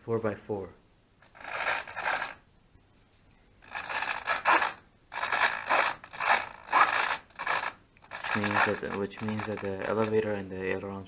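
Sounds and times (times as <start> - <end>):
servos buzzing: 1.2 - 2.4, 3.6 - 10.1.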